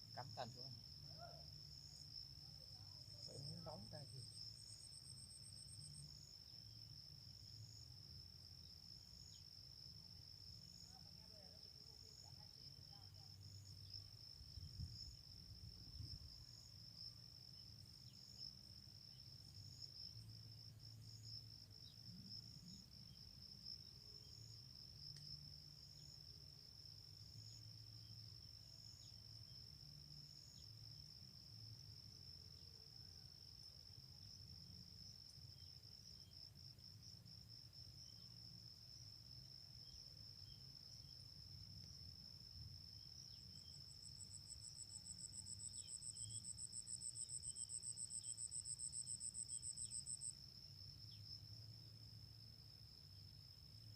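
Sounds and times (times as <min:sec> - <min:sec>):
insect chirps: 0:00.0 - 0:53.9
high-pitched insect trill: 0:08.6 - 0:53.9.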